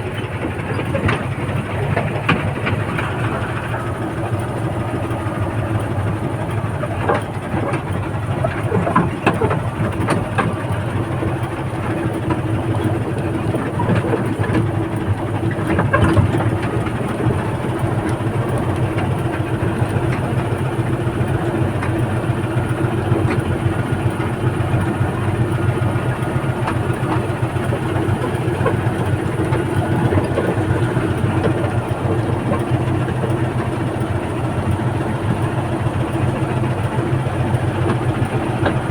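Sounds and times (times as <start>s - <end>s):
diesel engine humming: 0.0s - 38.9s.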